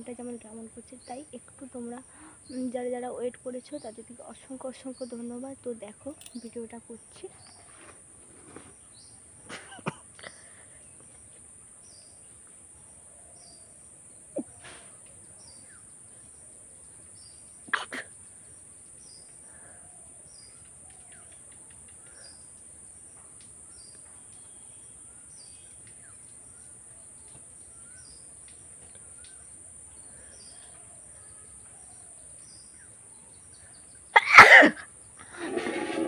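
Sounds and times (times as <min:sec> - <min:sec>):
faint bird chirps: 0:11.7 - 0:22.7, 0:23.7 - 0:34.2
woman sneezing: 0:17.7 - 0:18.1, 0:34.2 - 0:34.9.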